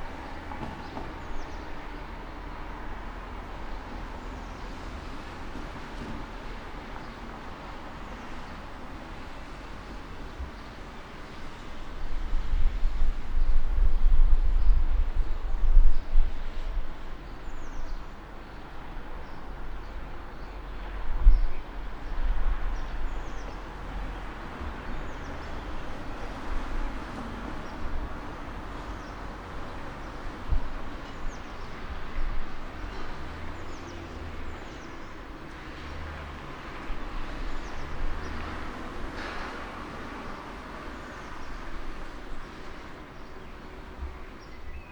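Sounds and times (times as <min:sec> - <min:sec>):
traffic rumble: 0:00.0 - 0:44.9
vehicles passing: 0:22.5 - 0:44.6.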